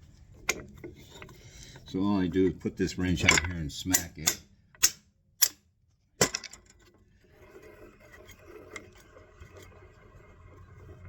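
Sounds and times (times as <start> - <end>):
metal scraping and rubbing: 7.2 - 10.8.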